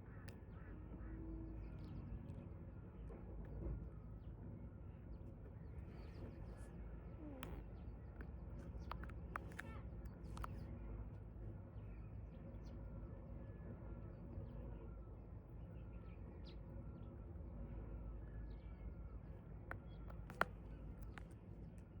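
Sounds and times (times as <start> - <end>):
small birds chirping: 4.2 - 12.9, 14.1 - 22.0.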